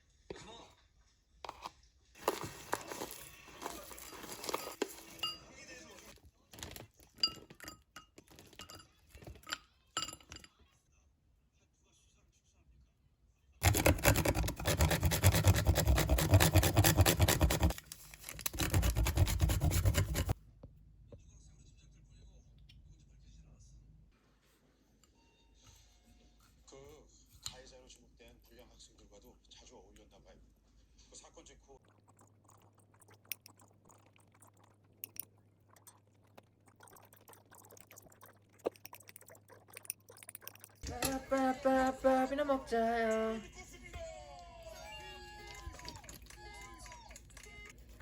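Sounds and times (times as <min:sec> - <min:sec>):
rapid scratching strokes: 0:13.6 - 0:17.8, 0:18.4 - 0:20.4
faint chewing: 0:31.8 - 0:41.4, 0:44.7 - 0:48.0.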